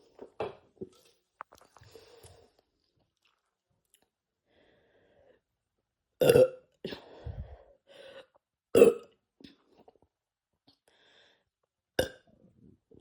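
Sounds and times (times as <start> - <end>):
person burping: 6.2 - 6.7, 8.7 - 9.2, 12.0 - 12.3.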